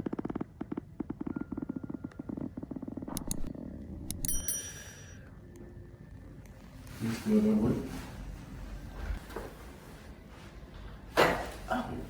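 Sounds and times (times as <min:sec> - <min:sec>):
small device buzzing in pulses: 0:00.3 - 0:05.2
sharp clicks: 0:03.1 - 0:04.4.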